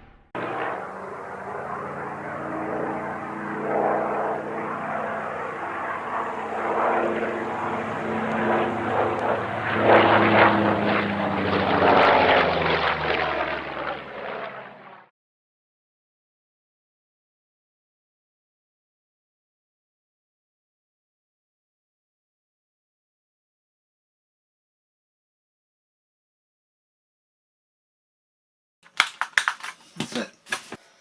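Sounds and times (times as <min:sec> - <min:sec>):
propeller aircraft engine: 0:00.4 - 0:15.1.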